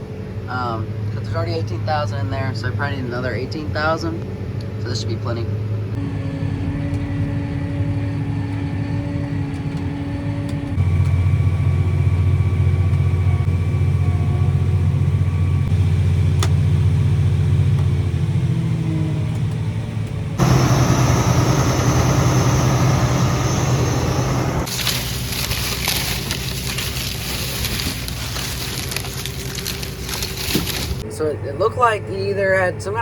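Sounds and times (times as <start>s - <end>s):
tractor engine running: 6.1s - 18.2s, 20.1s - 31.0s
broad rushing noise: 20.4s - 24.8s.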